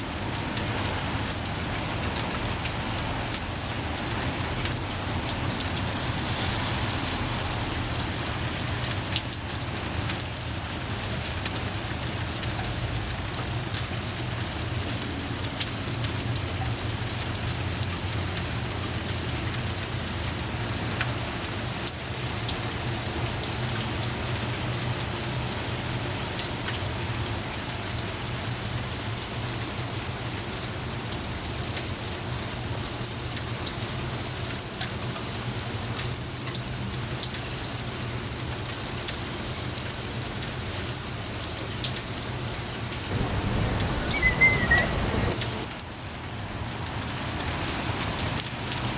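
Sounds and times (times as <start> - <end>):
steady rain falling: 0.0 - 48.9.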